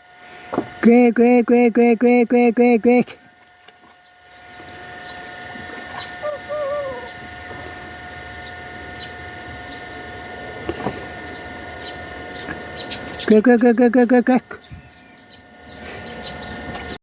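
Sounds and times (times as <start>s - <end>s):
goose calling: 5.8s - 7.3s.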